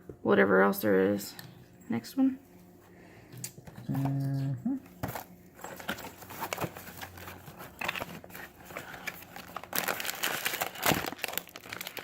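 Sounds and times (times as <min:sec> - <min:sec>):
packaging crinkling and rustling: 0:05.0 - 0:12.0.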